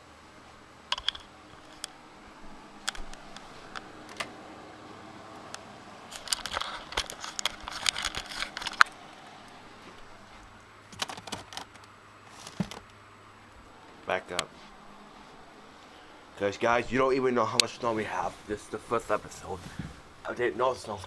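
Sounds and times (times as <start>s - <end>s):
handling clicks and knocks: 0.9s - 2.0s, 6.1s - 9.0s.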